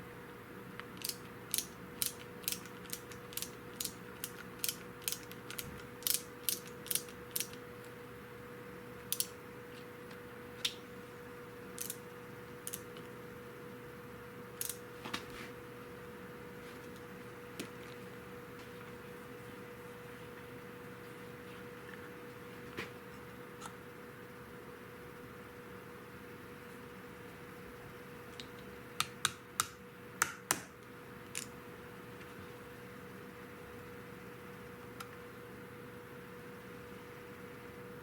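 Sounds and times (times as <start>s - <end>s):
faint steady hum: 0.0s - 38.0s
sharp mechanical clicking: 0.9s - 7.6s, 9.1s - 9.4s, 11.8s - 12.0s, 12.6s - 12.9s, 14.6s - 14.8s.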